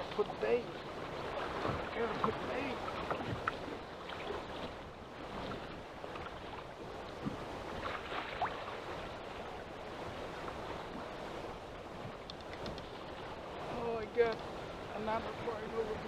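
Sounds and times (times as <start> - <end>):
choppy water washing around boat: 0.0 - 16.0
steady wind: 0.0 - 16.0
faint clicks and knocks: 12.2 - 12.9.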